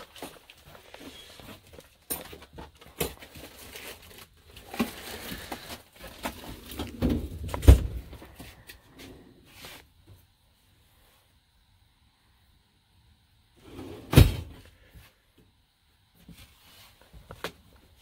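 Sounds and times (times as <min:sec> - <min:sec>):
handling clicks and rustles: 0:00.0 - 0:08.8.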